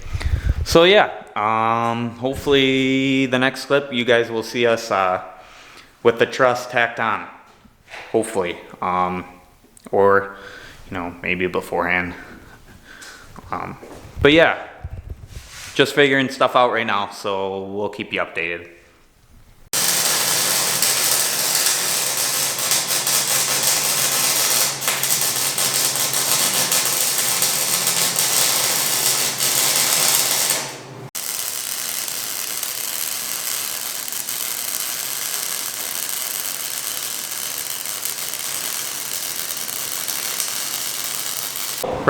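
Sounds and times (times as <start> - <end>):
welder crackling: 19.7 - 42.0.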